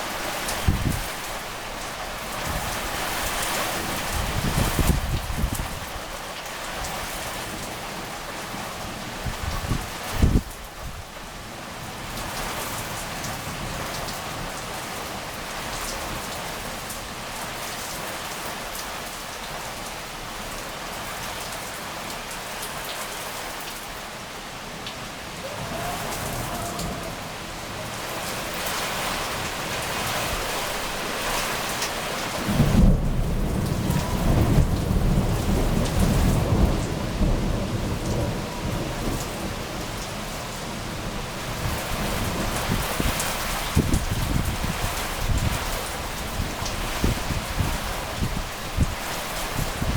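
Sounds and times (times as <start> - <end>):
heavy rain falling: 0.0 - 49.9
thunder rumbling: 25.4 - 39.8.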